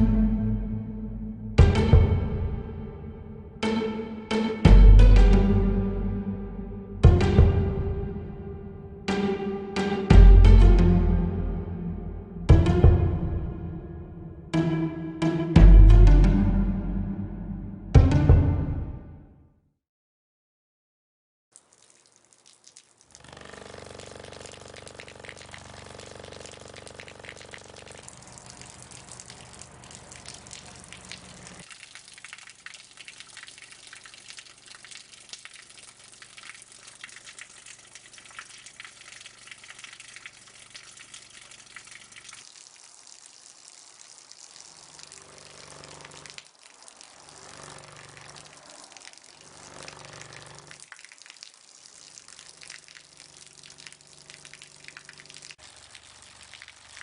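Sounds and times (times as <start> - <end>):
water rushing: 23.1 - 57.0.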